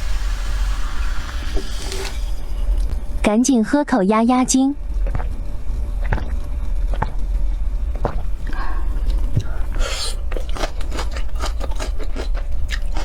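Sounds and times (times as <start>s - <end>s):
breathy hiss: 0.0s - 2.8s
crunchy biting and chewing: 8.0s - 13.0s.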